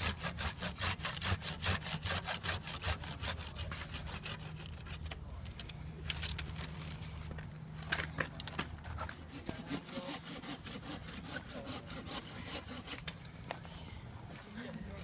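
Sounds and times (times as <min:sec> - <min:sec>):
saw cutting branch: 0:00.0 - 0:05.2, 0:09.0 - 0:13.2.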